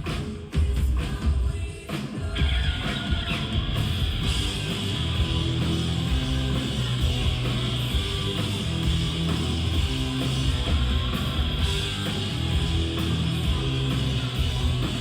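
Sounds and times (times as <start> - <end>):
heavy bass notes: 3.8 - 15.0.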